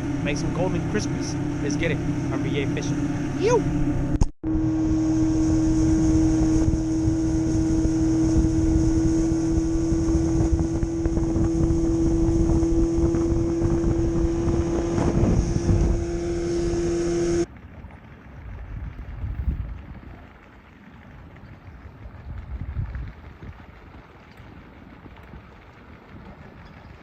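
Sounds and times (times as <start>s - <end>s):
rushing water: 0.0s - 3.6s, 4.6s - 27.0s
rushing wind: 0.0s - 17.5s
outboard motor running: 0.0s - 20.8s.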